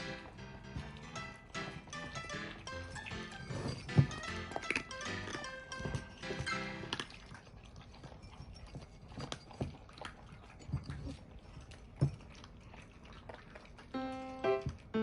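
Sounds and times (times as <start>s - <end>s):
background music: 0.0s - 7.0s, 14.0s - 15.0s
pets knocking and tapping: 0.0s - 7.1s.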